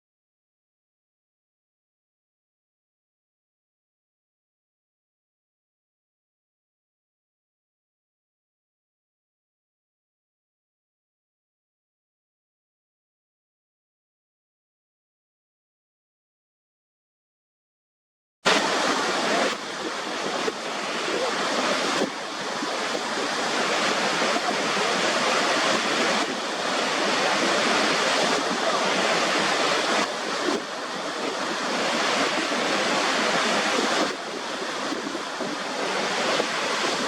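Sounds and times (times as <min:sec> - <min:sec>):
waterfall rushing: 0:18.5 - 0:37.0.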